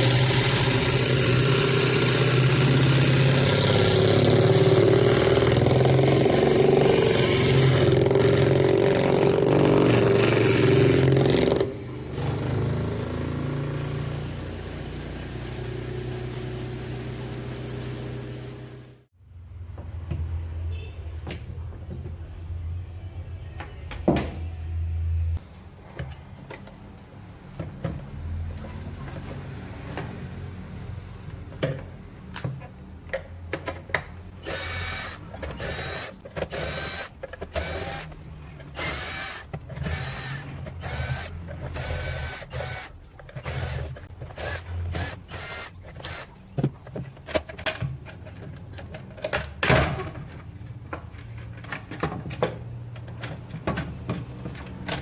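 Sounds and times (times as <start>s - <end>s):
parts clattering and knocking: 31.3s - 55.0s
small power tool bursts: 34.4s - 38.1s, 38.8s - 46.3s.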